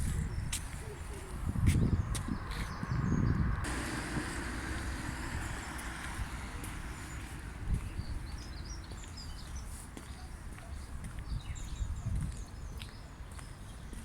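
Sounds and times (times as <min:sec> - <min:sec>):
small birds chirping: 0:00.0 - 0:14.0
steady low rumble: 0:01.4 - 0:09.3.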